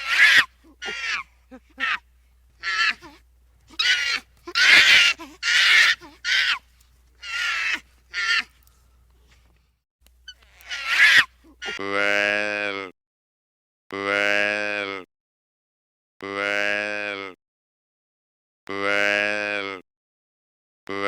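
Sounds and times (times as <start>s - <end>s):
animal making harsh calls: 0.0s - 2.0s, 2.6s - 8.6s, 10.3s - 12.9s.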